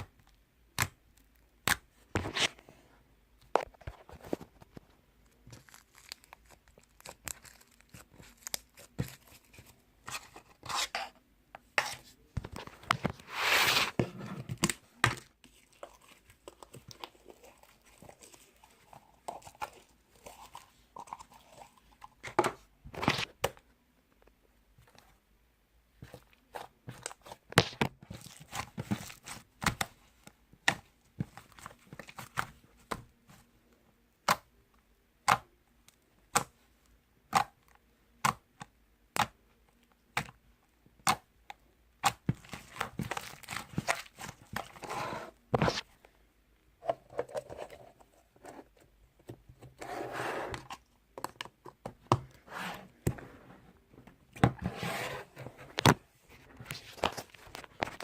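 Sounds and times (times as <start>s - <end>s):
tearing and crinkling: 5.5s - 9.4s.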